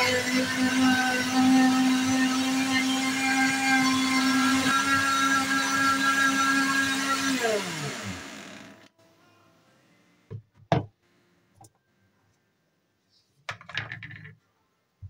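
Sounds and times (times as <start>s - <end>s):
blender motor spinning down: 0.0s - 8.9s
electric blender running: 0.0s - 8.9s.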